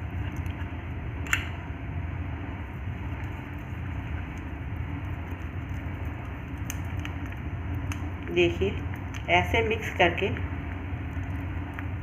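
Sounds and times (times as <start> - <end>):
gas stove burner rumble: 0.0 - 12.0.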